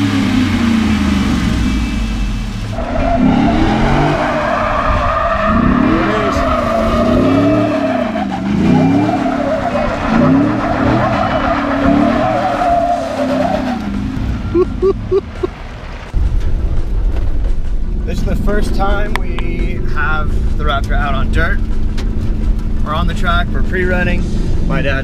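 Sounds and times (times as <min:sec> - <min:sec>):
engine revving: 0:00.0 - 0:15.6
tyres squealing: 0:02.8 - 0:15.5.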